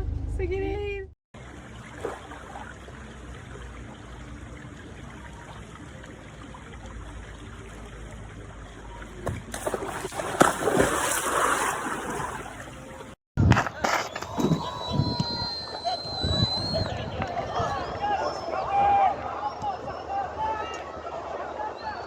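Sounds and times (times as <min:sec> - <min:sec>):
running water rushing: 0:01.4 - 0:13.2.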